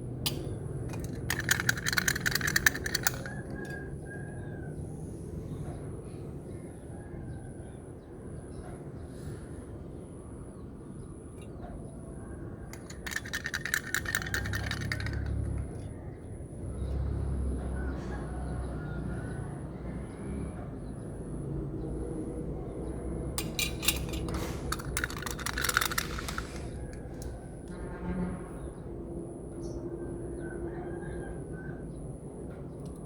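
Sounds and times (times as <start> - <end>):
plastic beads rattling into bucket: 0.9 - 3.4, 12.8 - 15.6, 23.4 - 26.9.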